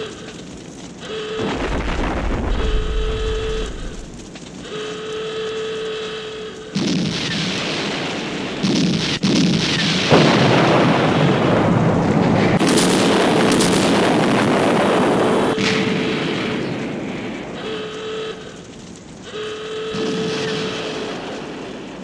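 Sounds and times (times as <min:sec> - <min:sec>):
explosion blasts: 0:01.4 - 0:04.3, 0:06.7 - 0:17.8, 0:19.9 - 0:22.0
long rumble: 0:01.4 - 0:04.6.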